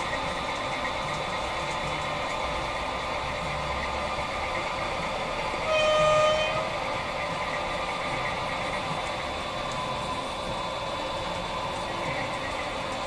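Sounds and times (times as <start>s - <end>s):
locomotive horn blast: 5.6s - 6.9s.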